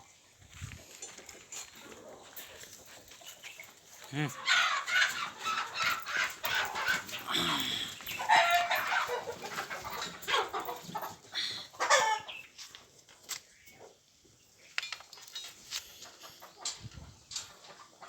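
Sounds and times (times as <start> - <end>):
farmyard animals calling: 1.8 - 12.6.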